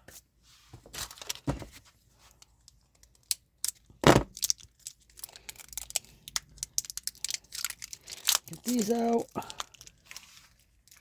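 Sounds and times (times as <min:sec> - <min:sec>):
packaging crinkling and tearing: 0:03.0 - 0:11.0.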